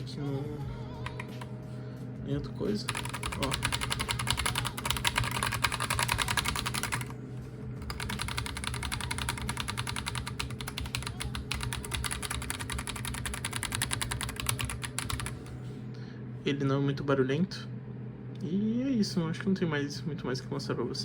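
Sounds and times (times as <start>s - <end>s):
mechanical keyboard typing: 2.9s - 7.1s, 7.8s - 15.5s.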